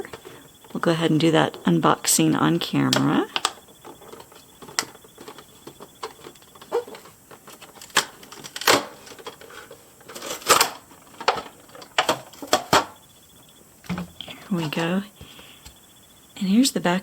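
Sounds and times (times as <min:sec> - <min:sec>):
packaging rustling: 0:02.9 - 0:13.0.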